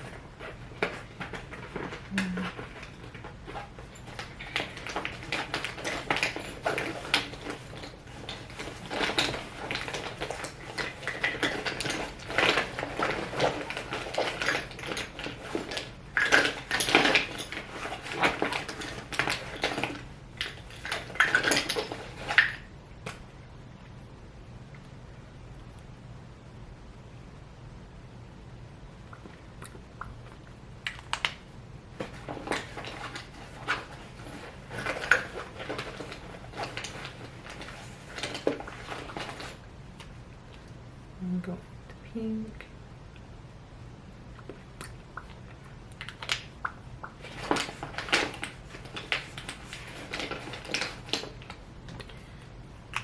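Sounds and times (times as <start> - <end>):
small hard items clattering: 0.0 - 23.2, 32.0 - 39.6, 46.0 - 52.3
makeup containers clicking and rattling: 0.4 - 22.6, 32.0 - 39.6, 46.0 - 52.2.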